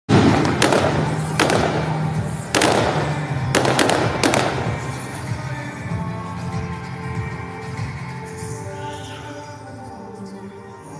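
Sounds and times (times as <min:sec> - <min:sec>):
fireworks bangs with echoes: 0:00.1 - 0:05.4
music: 0:00.1 - 0:10.9.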